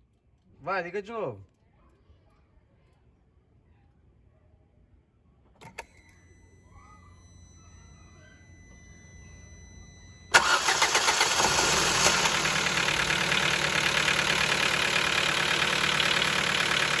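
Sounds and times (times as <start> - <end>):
car engine starting and running: 10.3 - 17.0.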